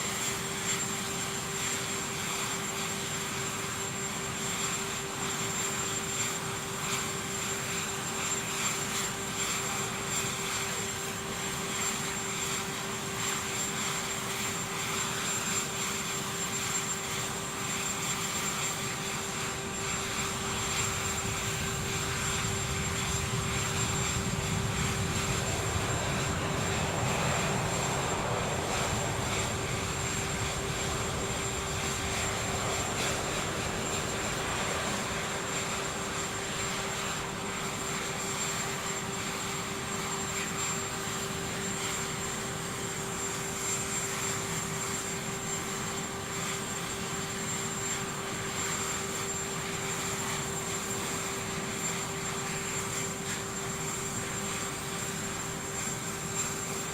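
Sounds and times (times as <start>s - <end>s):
aircraft engines whining and roaring: 0.0s - 56.9s.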